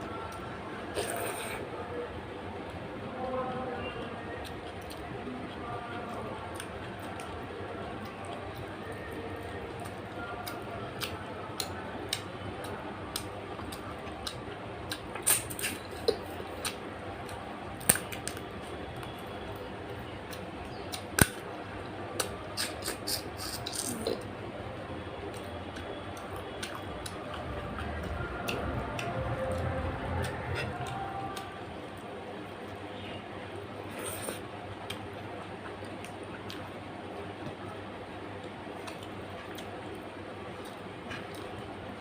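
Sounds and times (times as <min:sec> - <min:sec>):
chewing clicks and smacks: 0:09.7 - 0:19.2, 0:20.3 - 0:21.5, 0:22.1 - 0:24.3, 0:25.3 - 0:31.5, 0:34.1 - 0:36.7, 0:38.4 - 0:41.8.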